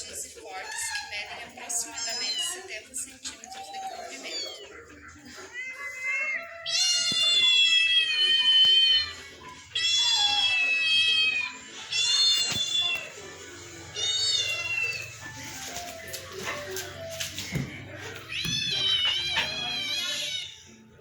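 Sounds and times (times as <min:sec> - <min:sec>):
cat meowing: 0:03.7 - 0:13.1, 0:13.9 - 0:15.1, 0:18.3 - 0:20.6.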